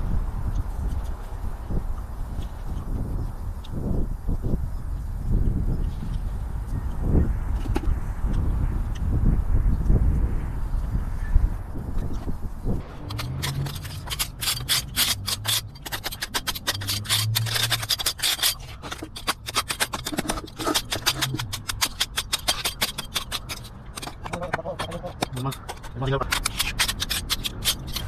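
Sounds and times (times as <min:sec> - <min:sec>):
hand tool scraping stucco: 0:12.8 - 0:28.0.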